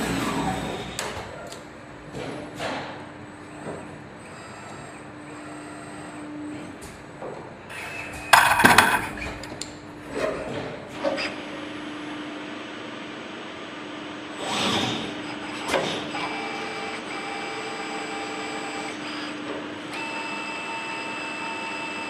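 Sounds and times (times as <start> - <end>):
cnc machine motors whining: 3.4 - 6.7, 14.3 - 22.0.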